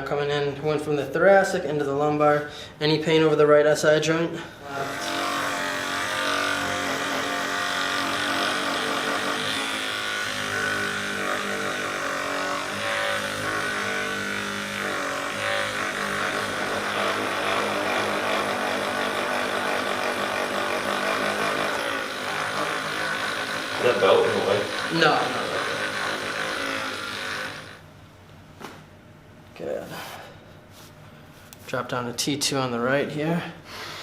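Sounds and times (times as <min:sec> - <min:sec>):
small electric motor buzzing: 0:04.6 - 0:27.8.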